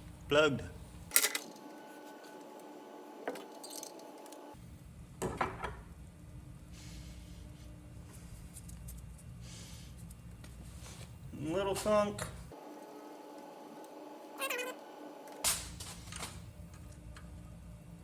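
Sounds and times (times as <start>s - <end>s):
steady low hum: 0.0s - 18.0s
metal tools clinking: 1.1s - 1.7s, 3.3s - 4.1s.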